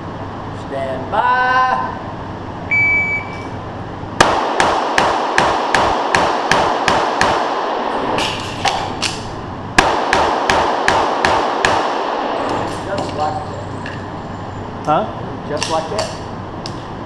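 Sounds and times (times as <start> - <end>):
shot timer beep: 2.7 - 3.5
pistol shots echoing indoors: 4.2 - 12.8.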